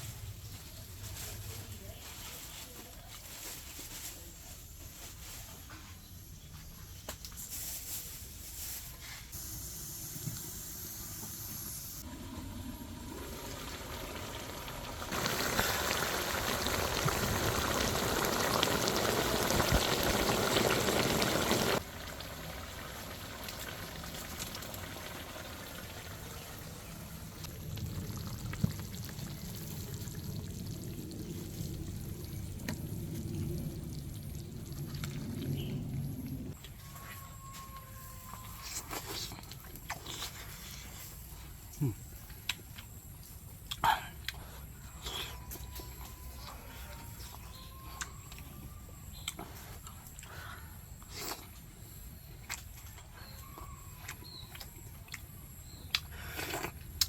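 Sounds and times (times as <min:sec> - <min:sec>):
liquid pouring and trickling: 0:12.0 - 0:36.6.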